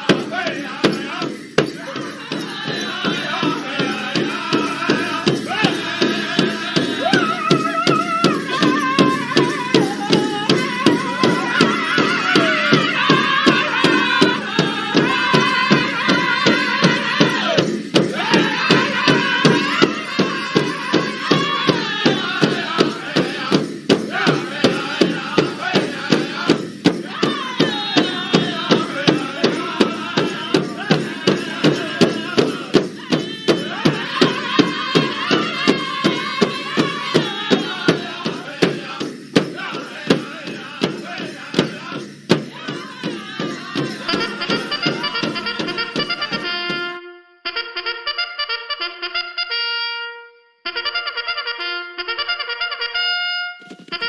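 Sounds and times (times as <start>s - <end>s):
voices chanting: 0.0s - 46.8s
steady drumbeat: 0.0s - 47.0s.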